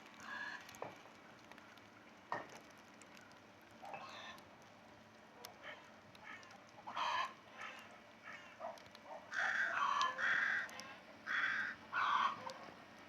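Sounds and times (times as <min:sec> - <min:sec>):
crows cawing: 0:09.3 - 0:12.4.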